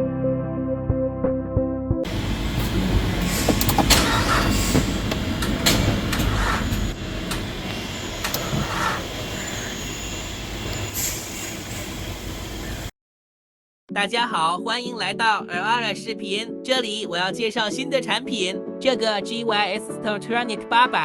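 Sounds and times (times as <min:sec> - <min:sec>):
music: 0:00.0 - 0:02.1, 0:13.9 - 0:21.0
noisy traffic rumble: 0:02.1 - 0:12.9
sharp clicks: 0:02.2 - 0:12.6.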